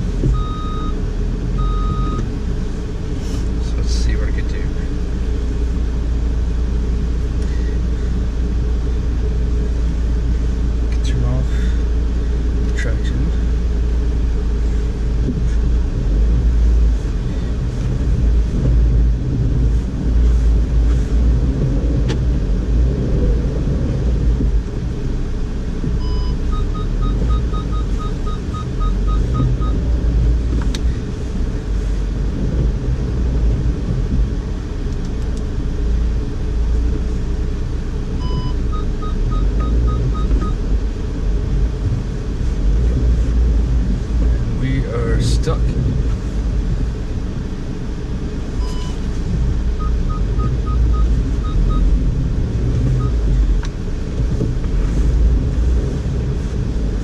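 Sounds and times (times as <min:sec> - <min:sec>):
car engine rumbling under throttle: 0:00.0 - 0:57.0
quick electronic beeps: 0:48.6 - 0:49.0.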